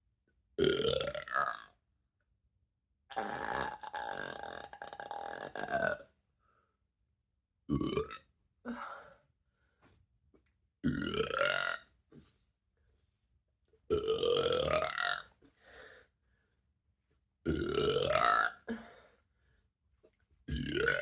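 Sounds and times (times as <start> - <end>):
woman burping: 3.1 - 6.0, 7.7 - 9.0, 17.5 - 18.9.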